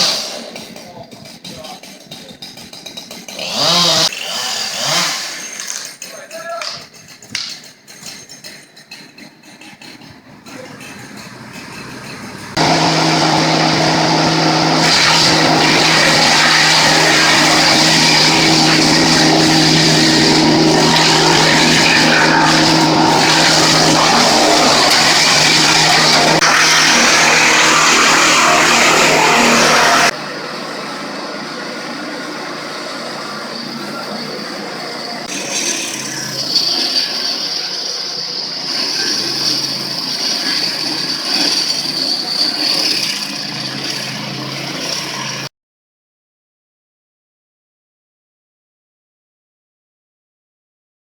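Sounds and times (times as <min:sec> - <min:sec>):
small gasoline engine running fast: 0:00.0 - 0:06.0, 0:09.2 - 0:45.5
motor whining: 0:11.2 - 0:45.5.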